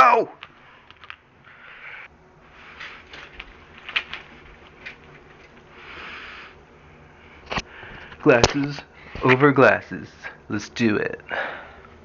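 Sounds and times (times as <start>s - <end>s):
handling noise rustle: 2.4s - 5.8s.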